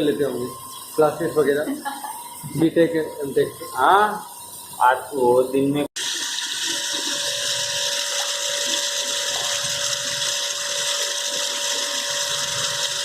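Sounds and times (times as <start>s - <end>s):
steady whining tones: 0.0s - 5.9s
machine hissing: 0.0s - 13.0s.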